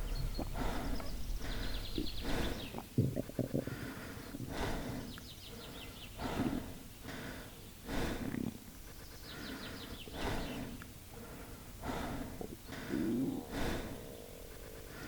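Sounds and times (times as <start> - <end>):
stomach growling and gurgling: 0.0 - 4.6, 12.3 - 15.0.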